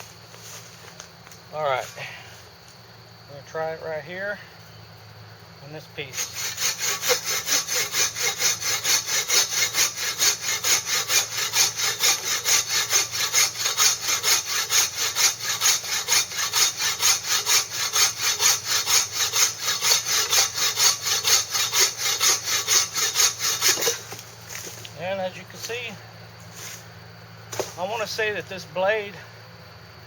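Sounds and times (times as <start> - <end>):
saw cutting through wood: 6.0 - 25.9.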